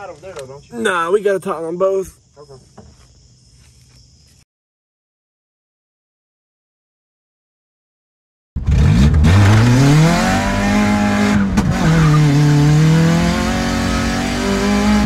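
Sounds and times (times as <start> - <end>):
car engine accelerating: 8.6 - 15.0.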